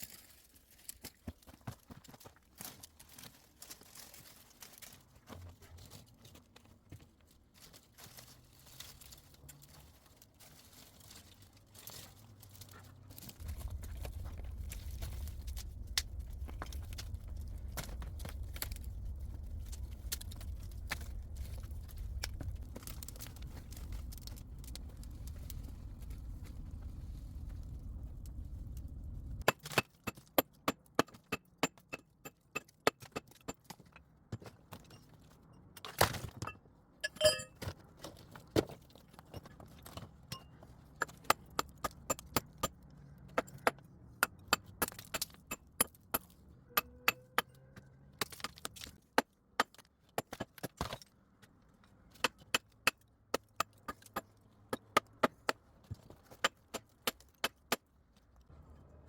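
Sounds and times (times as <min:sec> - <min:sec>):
low rumble: 0:13.4 - 0:29.4.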